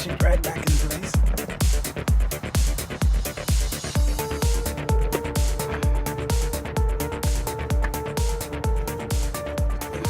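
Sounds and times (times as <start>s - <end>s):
electronic music with kick drum: 0.0s - 10.0s.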